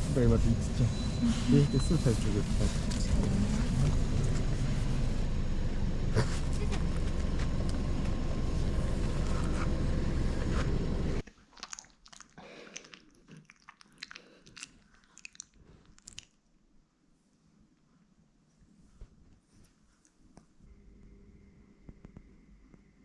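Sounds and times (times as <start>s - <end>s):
loud rumbling noise: 0.0s - 11.2s
puppies crunching and chewing: 11.2s - 16.4s.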